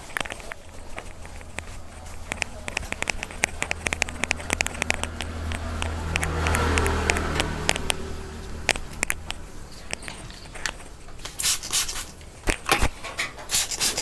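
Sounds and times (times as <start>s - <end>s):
clicks and taps: 0.0s - 8.0s
low hum: 0.0s - 11.3s
hands rubbing skin and hair: 0.0s - 12.3s.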